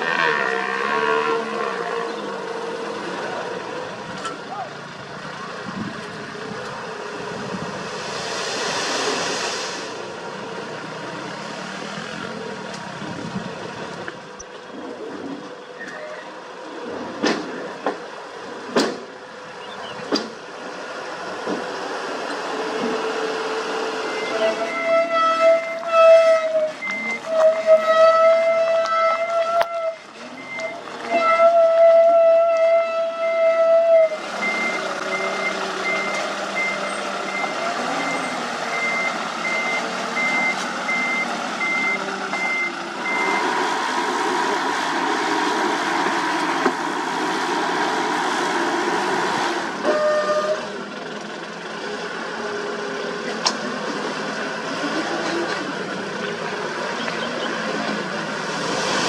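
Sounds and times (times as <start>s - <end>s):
diesel construction machinery running: 0.0s - 59.0s
truck reversing alarm beeping: 23.2s - 28.2s, 28.8s - 31.5s, 33.9s - 44.0s
vehicle horn blasts: 24.1s - 30.0s, 30.6s - 34.2s, 49.8s - 50.8s.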